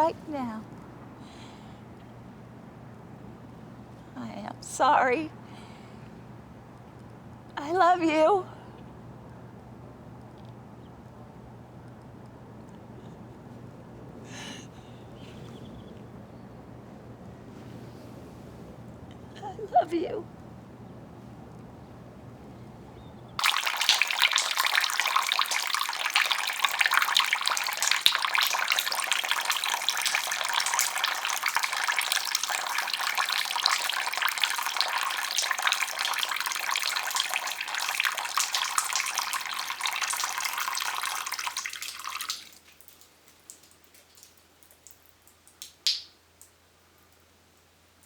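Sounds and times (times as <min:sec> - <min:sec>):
tap water running: 0:23.4 - 0:45.0.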